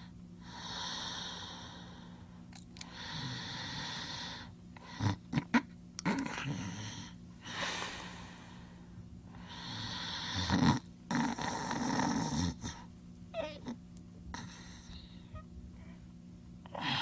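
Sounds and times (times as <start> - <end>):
heavy snoring: 3.0 - 5.2, 9.4 - 12.9.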